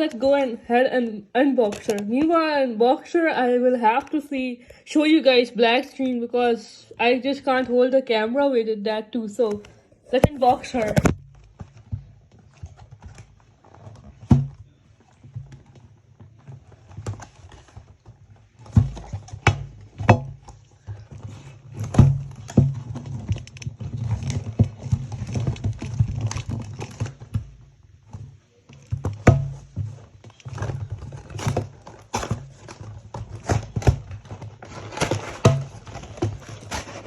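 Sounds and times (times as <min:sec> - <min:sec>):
packaging being opened: 0:30.2 - 0:37.0.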